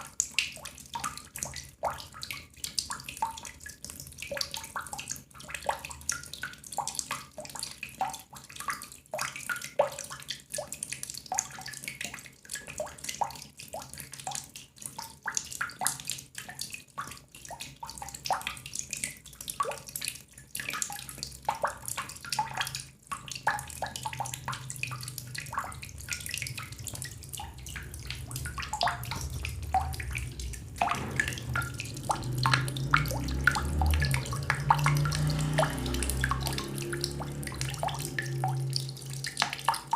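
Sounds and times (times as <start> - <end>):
water drops falling into water: 0.0 - 39.9
low rumble: 25.0 - 35.2.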